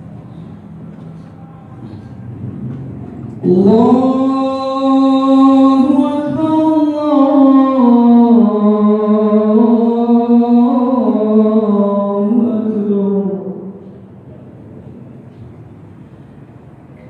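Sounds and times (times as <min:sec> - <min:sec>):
man chanting call to prayer: 0:03.4 - 0:14.0.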